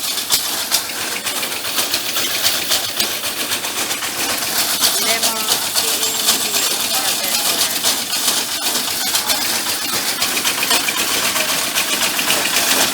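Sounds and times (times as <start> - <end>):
vacuum truck running: 0.0 - 12.9.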